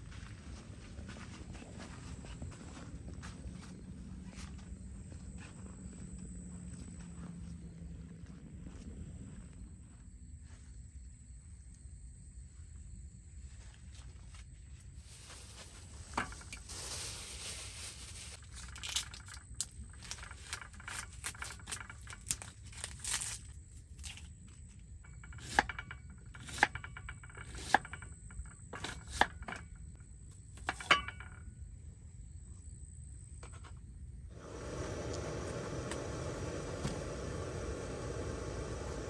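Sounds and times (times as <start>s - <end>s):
steady low rumble: 34.3s - 39.0s.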